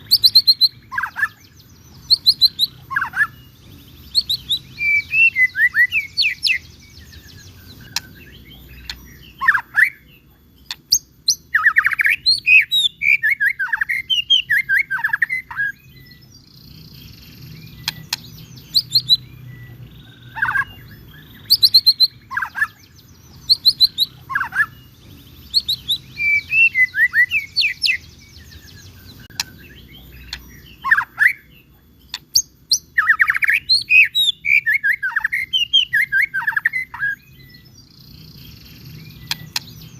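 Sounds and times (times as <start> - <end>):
bird whistling and chirping: 0.0 - 39.9.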